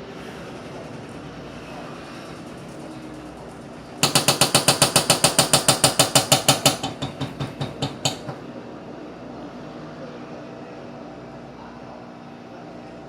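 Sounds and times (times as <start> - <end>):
washing machine hum: 0.0 - 10.1
washing machine rapid knocking: 4.0 - 8.4.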